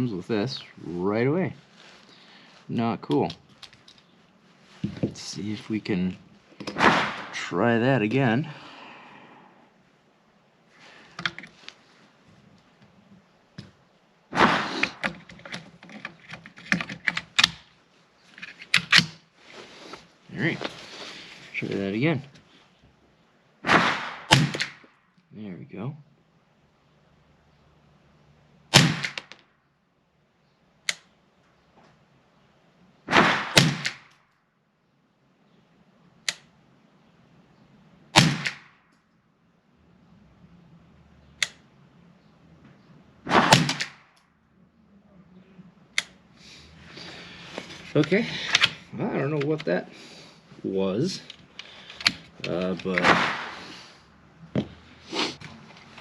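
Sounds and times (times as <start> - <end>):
rifle shots cracking: 6.7 - 7.6, 14.3 - 15.0, 23.6 - 24.9, 28.7 - 29.4, 33.1 - 34.1, 38.2 - 38.7, 43.3 - 44.0, 52.9 - 53.9
rifle bolt metallic clicks: 29.0 - 29.4, 36.2 - 36.5.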